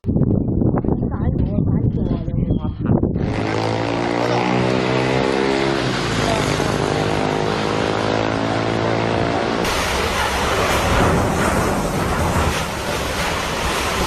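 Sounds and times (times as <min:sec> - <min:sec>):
storm wind rushing: 0:00.0 - 0:04.2, 0:05.3 - 0:14.0
wind buffeting microphone: 0:00.0 - 0:05.0, 0:07.9 - 0:14.0.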